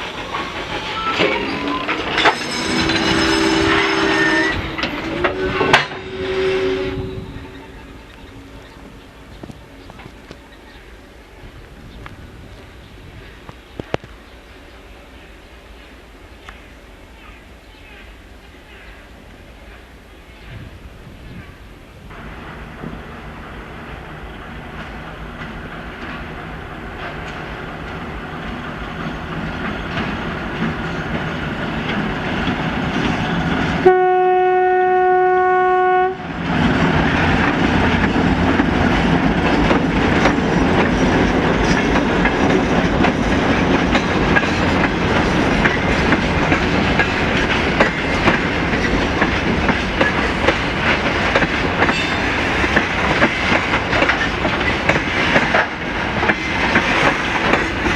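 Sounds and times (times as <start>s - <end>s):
wheels clacking over rail joints: 0.0s - 10.9s, 22.1s - 33.9s, 36.3s - 57.9s
diesel locomotive engine: 0.0s - 57.9s
train horn blast: 2.3s - 8.2s, 33.8s - 36.4s.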